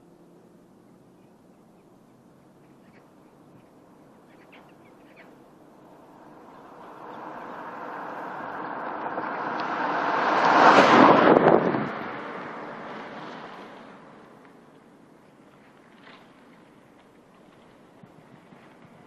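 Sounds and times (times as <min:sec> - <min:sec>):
car engine and exhaust: 0:00.0 - 0:19.0.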